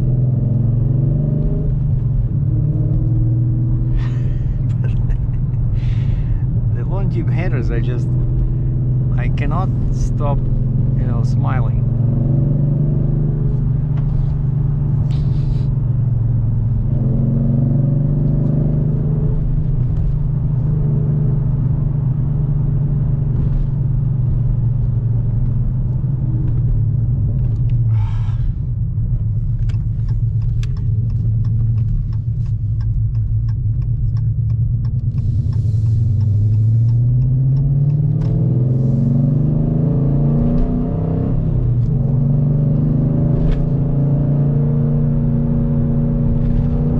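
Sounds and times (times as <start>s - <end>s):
car engine while driving: 0.0s - 46.9s
light regular ticks: 29.6s - 38.4s.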